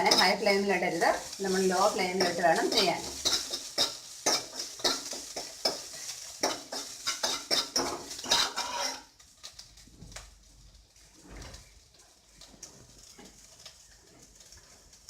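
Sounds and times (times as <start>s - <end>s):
utensil scraping a pan: 0.0s - 9.1s
light sizzling in oil: 0.0s - 15.0s.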